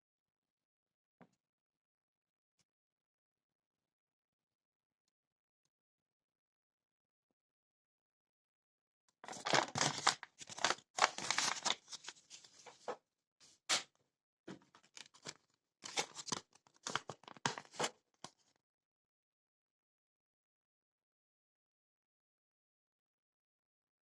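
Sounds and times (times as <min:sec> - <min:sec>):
paper rustling and crinkling: 0:09.3 - 0:13.0, 0:14.8 - 0:18.4.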